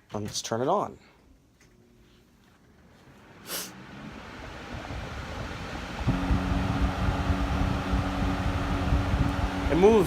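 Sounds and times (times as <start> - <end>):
box fan blowing air: 2.8 - 10.0.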